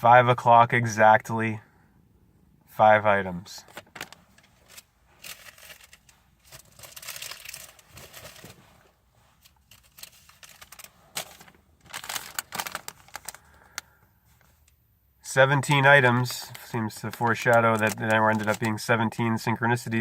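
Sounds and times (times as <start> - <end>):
paper rustling and crinkling: 3.7 - 13.5, 16.2 - 18.8.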